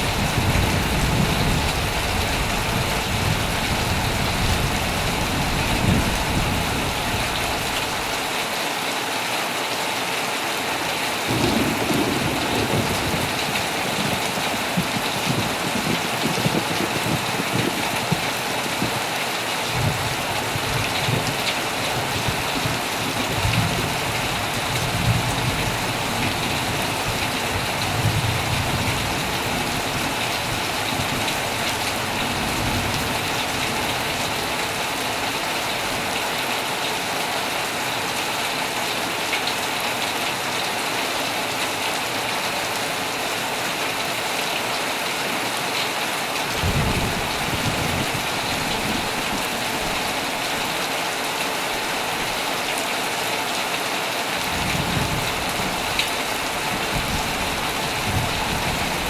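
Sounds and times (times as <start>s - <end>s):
heavy rain on a tent: 0.0s - 59.0s
rolls of thunder: 11.3s - 19.0s.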